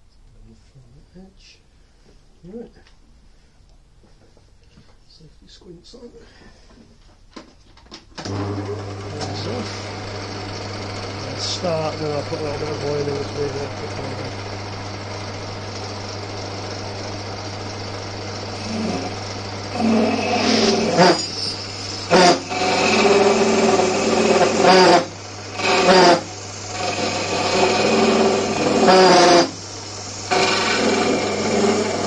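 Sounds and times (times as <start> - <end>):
lathe motor hum: 8.2 - 32.0
cutting tool rasping screech: 18.5 - 29.6, 30.2 - 32.0.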